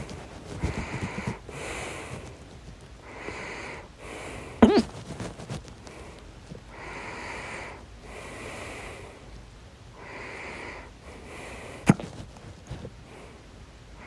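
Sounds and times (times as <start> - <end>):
person breathing noisily: 0.0 - 9.2
person hiccuping: 4.6 - 5.5.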